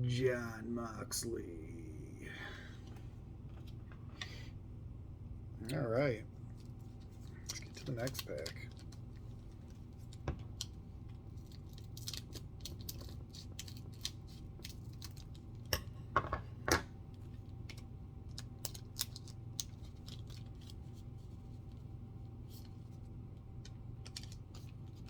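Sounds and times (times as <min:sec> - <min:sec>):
card pack crinkling and clicking: 0:07.3 - 0:10.8, 0:11.4 - 0:15.7, 0:17.7 - 0:20.9, 0:23.6 - 0:25.0.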